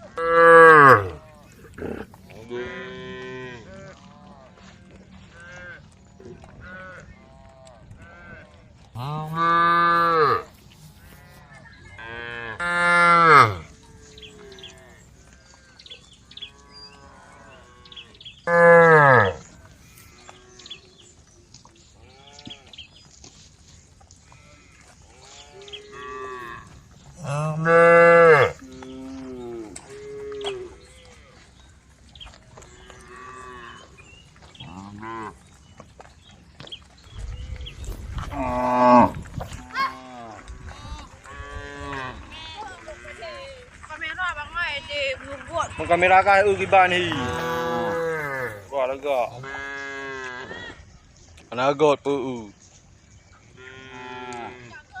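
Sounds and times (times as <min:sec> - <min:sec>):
cows mooing: 0:00.0 - 0:05.8, 0:06.5 - 0:21.0, 0:24.3 - 0:31.4, 0:32.6 - 0:35.4, 0:38.2 - 0:43.4, 0:45.6 - 0:50.7, 0:53.6 - 0:54.8.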